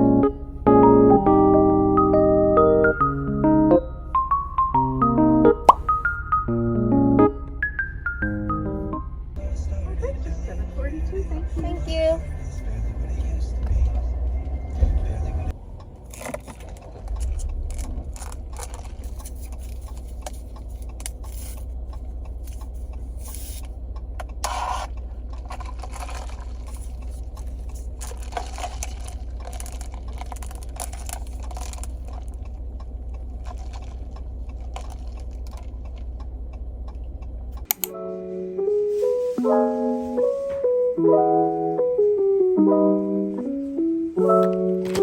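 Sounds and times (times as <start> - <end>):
car road rumble: 0.0 - 37.7
light clinks and rattles: 16.1 - 23.7.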